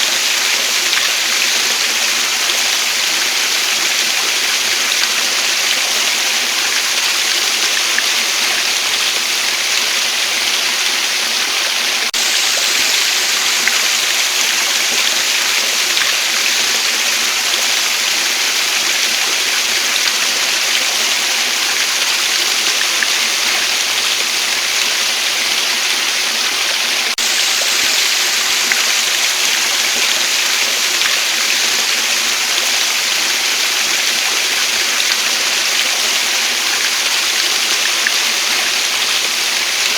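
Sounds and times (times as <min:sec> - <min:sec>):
waterfall rushing: 0:10.2 - 0:39.9.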